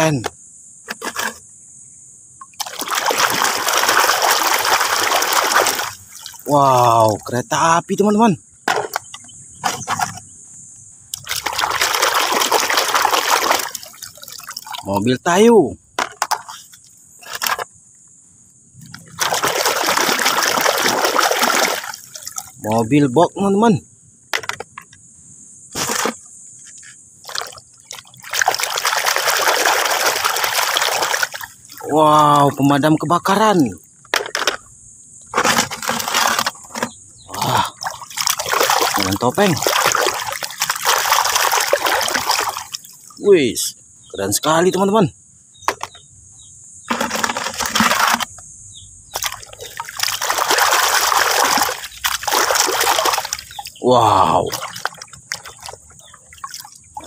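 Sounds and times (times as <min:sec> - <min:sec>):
water splashing and pouring: 0:02.4 - 0:07.3, 0:11.2 - 0:15.0, 0:18.9 - 0:22.7, 0:27.2 - 0:32.8, 0:35.4 - 0:43.2, 0:46.9 - 0:48.3, 0:49.2 - 0:57.0.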